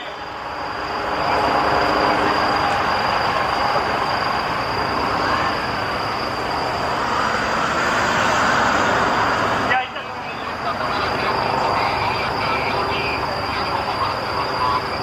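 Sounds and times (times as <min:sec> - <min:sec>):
faint rising and falling tone: 0:00.0 - 0:11.8
vehicles passing on street: 0:00.0 - 0:15.0.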